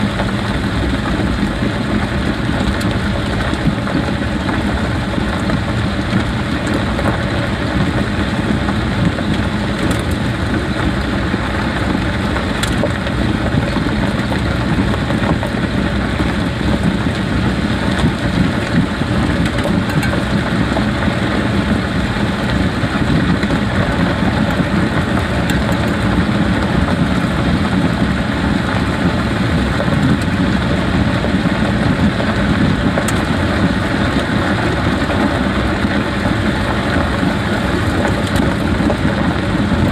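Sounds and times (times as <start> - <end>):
car driving slowly: 0.0 - 39.9.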